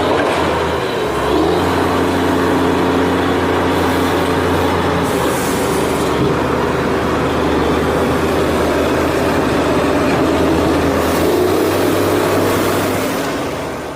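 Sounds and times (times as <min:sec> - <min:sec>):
truck engine running: 0:00.0 - 0:13.9
hiss: 0:05.0 - 0:06.2.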